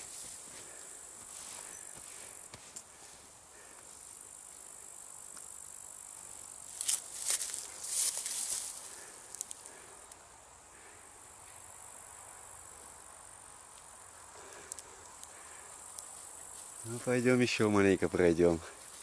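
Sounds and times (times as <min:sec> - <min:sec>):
insects chirring: 0:00.0 - 0:19.0
faint clicks: 0:09.3 - 0:10.2, 0:14.5 - 0:16.2.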